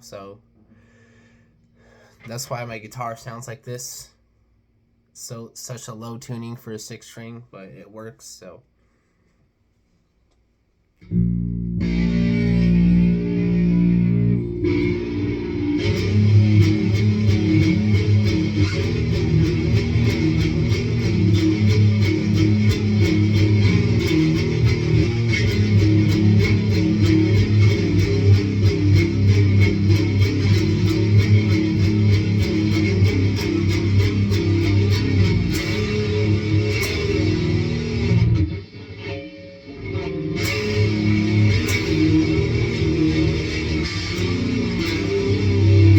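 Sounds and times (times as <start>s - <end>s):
distorted electric guitar riff: 11.0s - 45.9s.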